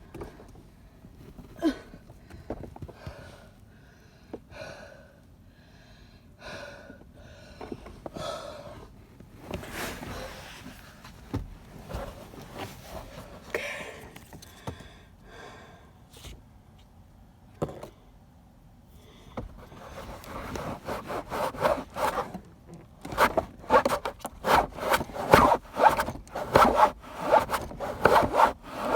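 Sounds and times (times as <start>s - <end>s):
fabric and straps rustling: 9.3s - 13.5s, 19.6s - 22.4s, 23.0s - 28.9s.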